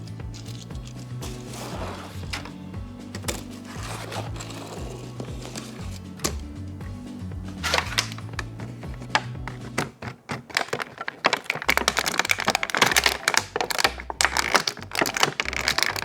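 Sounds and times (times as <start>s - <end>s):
plastic toy packaging clicking and cracking: 7.6s - 16.0s.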